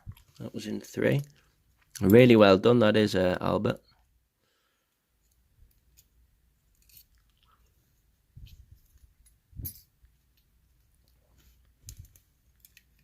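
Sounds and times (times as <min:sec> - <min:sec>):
small metal parts clicking: 0:06.7 - 0:07.4, 0:11.8 - 0:13.0.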